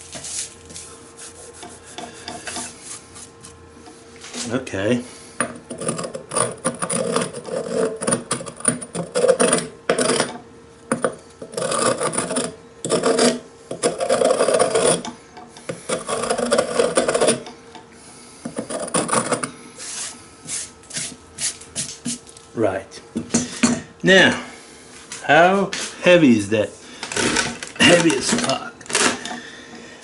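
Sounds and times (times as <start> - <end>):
rough scraping and rubbing: 0.0 - 3.6, 5.8 - 8.3, 11.5 - 15.0, 15.8 - 17.4, 18.6 - 22.2.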